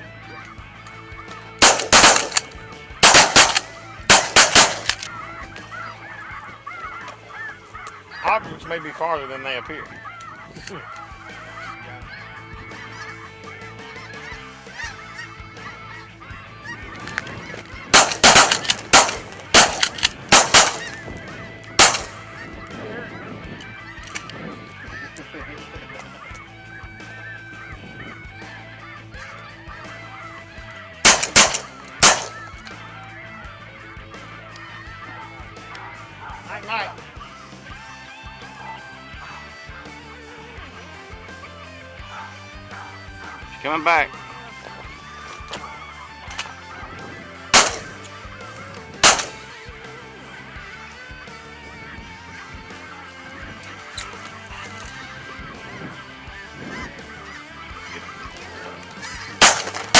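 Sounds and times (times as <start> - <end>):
guitar-led song: 0.0 - 6.3, 10.1 - 59.9
shotgun shots: 1.6 - 5.1, 18.0 - 21.0, 21.8 - 22.2, 31.1 - 32.4, 47.5 - 48.1, 49.0 - 49.5, 59.4 - 59.9
geese honking: 1.6 - 24.3, 31.1 - 32.9, 34.2 - 59.9.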